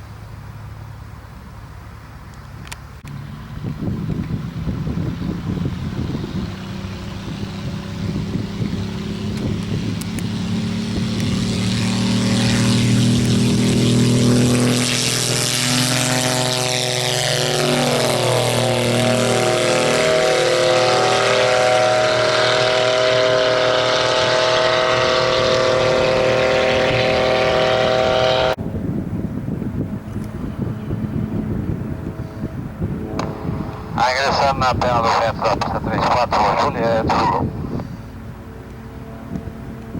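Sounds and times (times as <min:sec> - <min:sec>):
propeller airplane passing: 0:00.0 - 0:39.9
wind noise: 0:02.5 - 0:14.6, 0:24.2 - 0:39.9.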